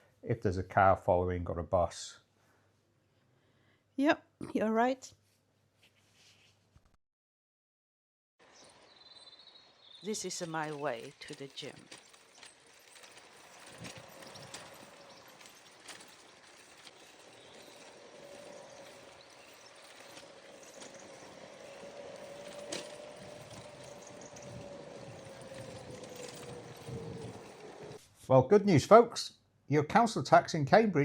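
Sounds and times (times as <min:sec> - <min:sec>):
road and tyre noise: 0:08.4 - 0:28.0.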